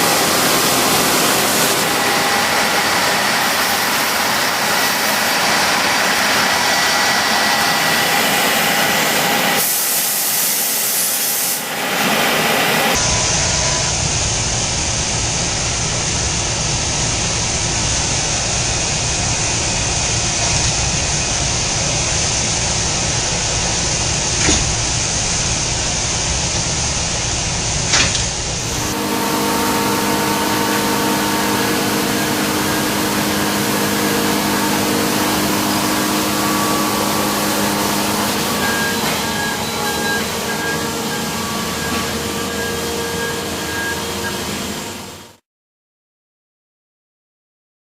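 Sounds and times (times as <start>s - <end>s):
machine hum: 0.0s - 10.3s, 11.7s - 45.4s
coolant spray hiss: 9.6s - 11.7s, 15.1s - 38.9s.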